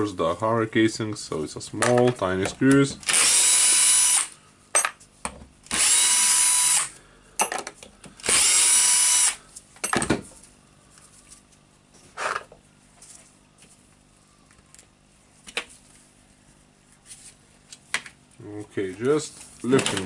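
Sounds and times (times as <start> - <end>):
power screwdriver whining: 3.0 - 4.3, 5.7 - 6.9, 8.2 - 9.4.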